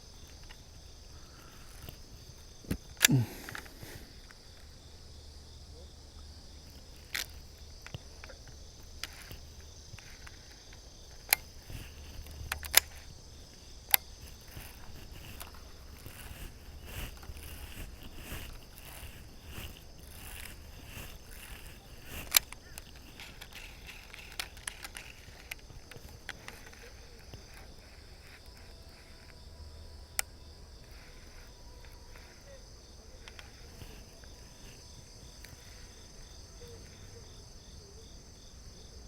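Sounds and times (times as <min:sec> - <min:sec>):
crickets chirring: 0:00.0 - 0:39.0
sharp clicks: 0:13.8 - 0:29.4.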